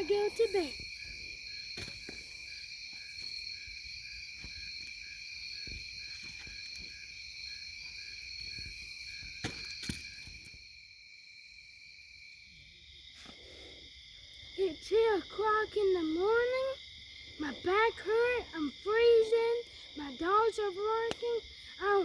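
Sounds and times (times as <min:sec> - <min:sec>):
frogs calling: 0:00.0 - 0:10.6
crickets trilling: 0:00.0 - 0:22.0.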